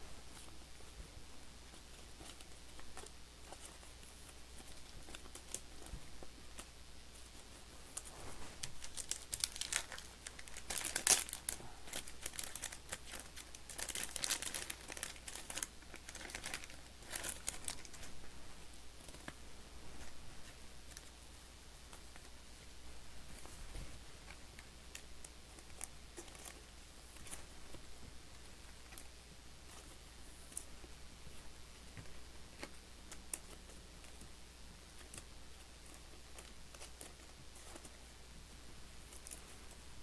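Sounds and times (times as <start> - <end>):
plastic card sleeves crinkling: 1.7 - 18.2.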